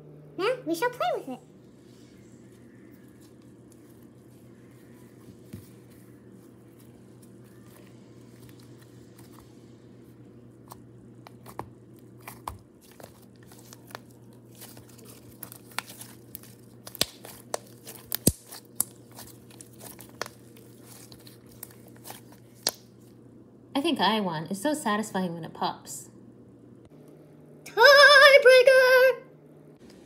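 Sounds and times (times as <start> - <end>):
slime squeezed popping and crackling: 12.2 - 22.9.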